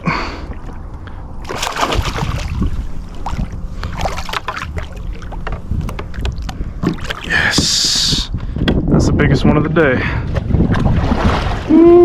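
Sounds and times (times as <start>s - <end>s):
wind rumble on microphone: 0.6s - 12.0s
fish splashing in water: 1.4s - 7.6s.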